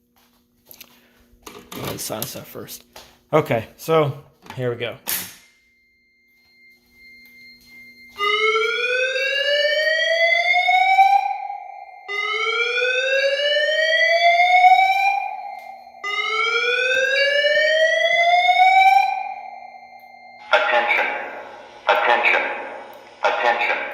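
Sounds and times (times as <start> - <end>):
fire alarm whoop tone: 5.4 - 23.0.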